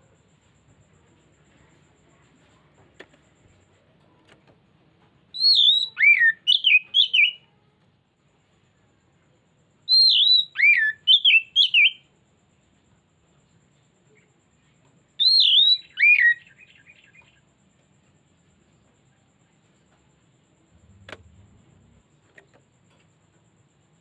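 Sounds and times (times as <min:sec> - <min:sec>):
bird singing whistled notes: 0:05.3 - 0:07.6, 0:09.8 - 0:12.1, 0:15.2 - 0:17.5.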